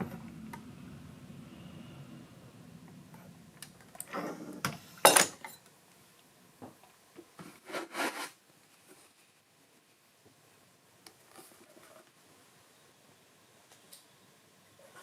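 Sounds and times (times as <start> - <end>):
low steady hum: 0.0 - 7.2.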